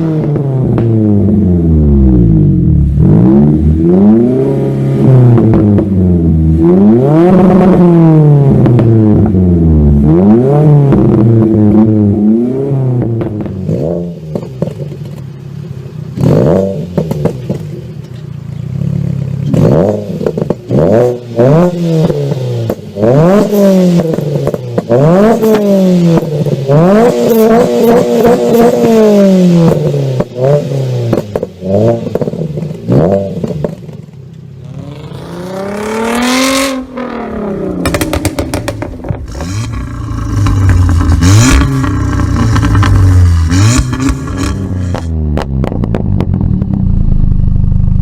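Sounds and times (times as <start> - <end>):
car engine revving: 0.0 - 48.0
exhaust pops and crackles: 13.0 - 15.4, 16.9 - 18.6, 20.2 - 20.8, 31.0 - 34.6, 37.8 - 48.0.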